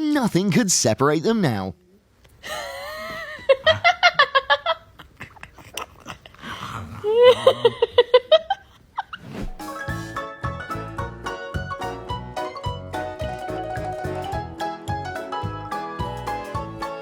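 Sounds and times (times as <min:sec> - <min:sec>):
person laughing: 0:02.4 - 0:06.3, 0:07.0 - 0:09.2
light keyboard music: 0:09.6 - 0:17.0.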